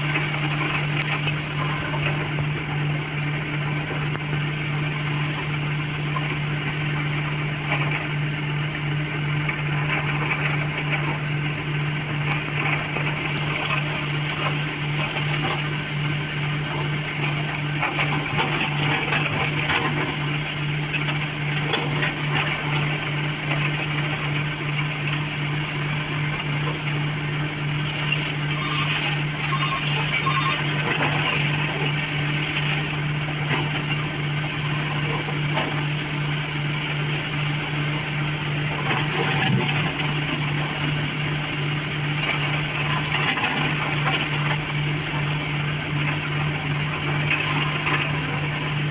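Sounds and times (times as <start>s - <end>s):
excavator diesel engine running: 0.0s - 48.9s.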